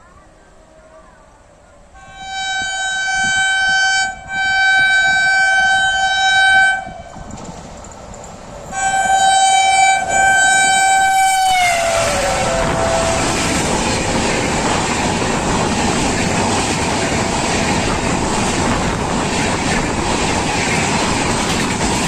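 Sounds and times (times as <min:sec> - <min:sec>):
train passing rush: 0:00.0 - 0:22.0
locomotive air horn blasts: 0:01.9 - 0:07.3, 0:08.7 - 0:13.8.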